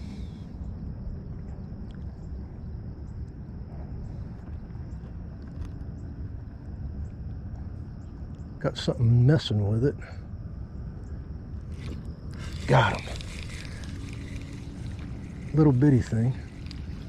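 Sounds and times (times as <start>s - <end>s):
wind on microphone: 11.6s - 17.0s
faint ticks: 11.7s - 17.0s.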